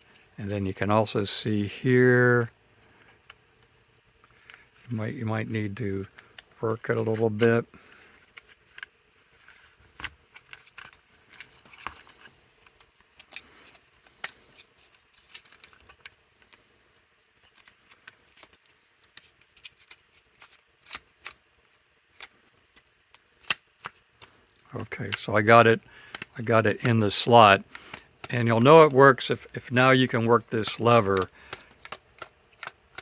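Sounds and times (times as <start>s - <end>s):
plastic parts clicking and scraping: 2.8s - 33.0s.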